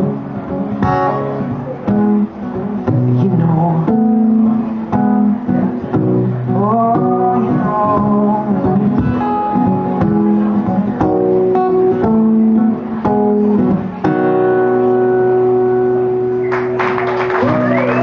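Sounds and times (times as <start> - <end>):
acoustic guitar strumming chords: 0.0 - 16.7
people clapping: 16.4 - 18.0.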